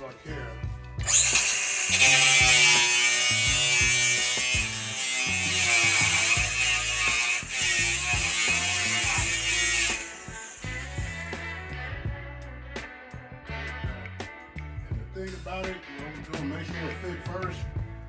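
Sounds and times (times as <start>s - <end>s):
background music: 0.0s - 18.0s
grinder on metal: 1.0s - 11.8s.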